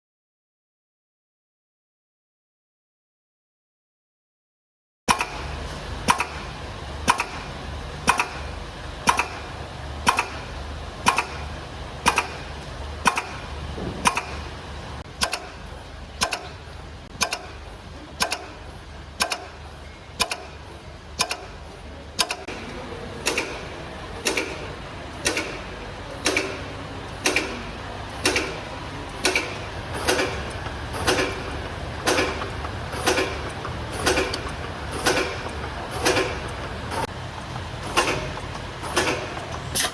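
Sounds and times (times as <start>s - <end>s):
sharp mechanical click: 5.1s - 5.4s, 6.0s - 14.5s, 15.1s - 17.6s, 18.2s - 19.6s, 20.2s - 22.6s, 23.2s - 37.1s, 37.8s - 39.9s
machine motor hum: 5.1s - 39.9s.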